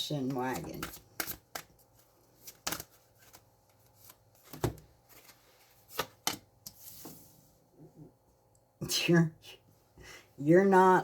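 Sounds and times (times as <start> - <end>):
cards shuffled flicking and slapping: 0.3 - 6.8.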